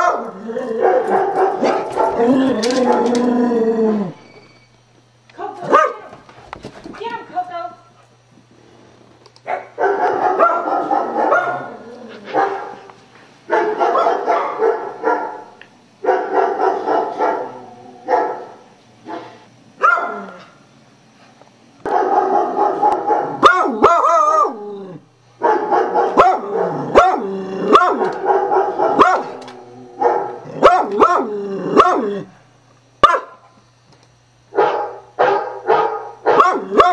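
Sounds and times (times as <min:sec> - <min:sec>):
dog barking and baying: 0:00.0 - 0:03.2, 0:05.6 - 0:06.1, 0:09.5 - 0:12.9, 0:13.5 - 0:20.4, 0:21.9 - 0:32.3, 0:33.0 - 0:33.4, 0:34.5 - 0:36.9.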